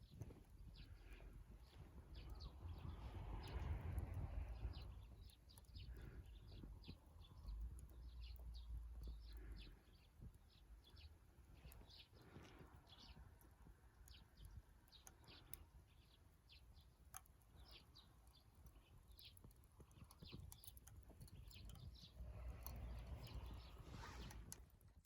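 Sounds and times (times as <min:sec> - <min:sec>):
low background rumble: 0:00.4 - 0:12.0, 0:21.3 - 0:24.6.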